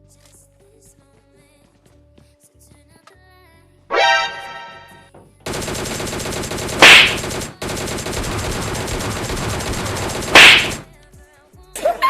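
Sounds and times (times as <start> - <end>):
machine-gun fire: 5.5 - 10.9.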